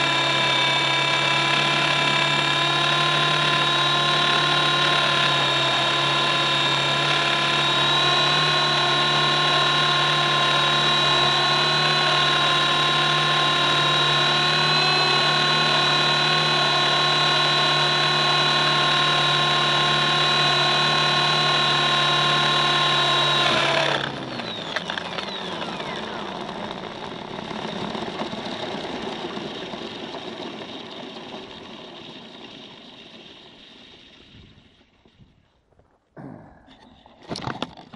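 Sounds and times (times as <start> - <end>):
rotor whoosh winding down: 0.0 - 35.3
helicopter motor whine: 0.0 - 35.4.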